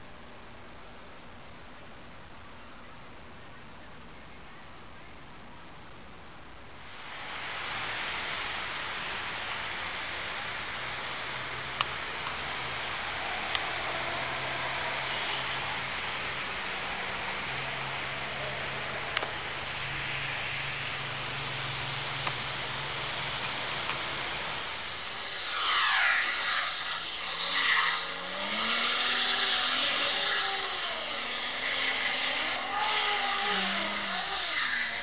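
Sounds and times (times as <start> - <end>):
vehicle noise hiss and hum: 0.0 - 35.0
wavering engine whine: 7.0 - 35.0.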